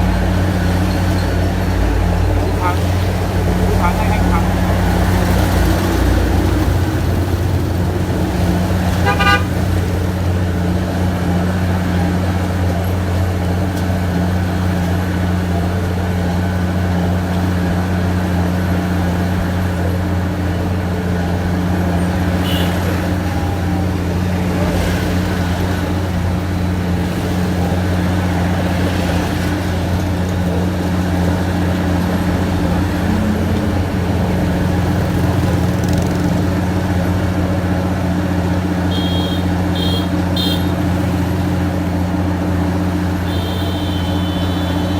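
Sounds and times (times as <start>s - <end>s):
heavy engine droning: 0.0s - 44.9s
short horn toot: 43.2s - 44.9s.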